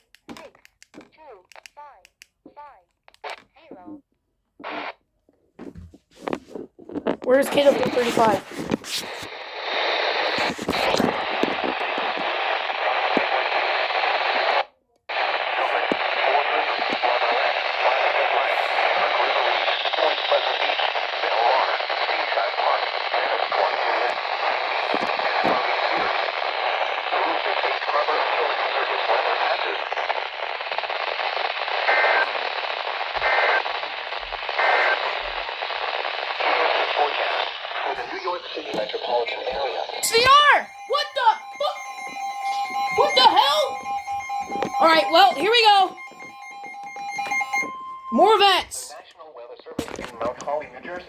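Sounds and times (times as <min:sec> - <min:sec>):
radio static hiss: 0:04.6 - 0:05.0, 0:05.6 - 0:51.0
two-tone data bursts: 0:38.7 - 0:49.0.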